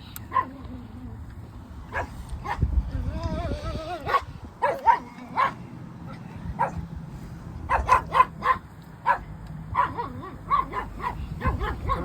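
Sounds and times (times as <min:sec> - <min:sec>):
dog barking: 0:00.3 - 0:00.6, 0:01.9 - 0:02.7, 0:04.0 - 0:05.6, 0:06.6 - 0:06.8, 0:07.7 - 0:12.0.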